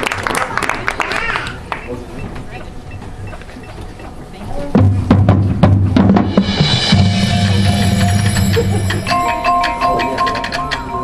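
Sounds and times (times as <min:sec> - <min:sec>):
crowd murmur: 0:00.0 - 0:11.0
marching band playing: 0:01.8 - 0:11.0
sharp drum hits: 0:04.8 - 0:09.2.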